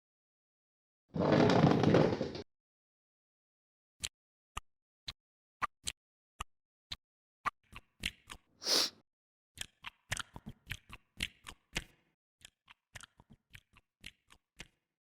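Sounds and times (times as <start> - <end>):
hissing burst: 8.6 - 8.9
gum chewing with wet smacks: 9.6 - 14.8.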